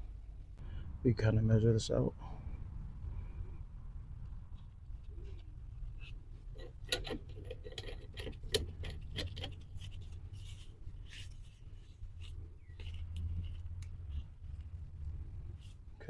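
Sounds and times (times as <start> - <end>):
steady low rumble: 0.0 - 16.0
pipe fittings clicking and scraping: 4.5 - 15.8
soft rubbing: 9.0 - 16.0.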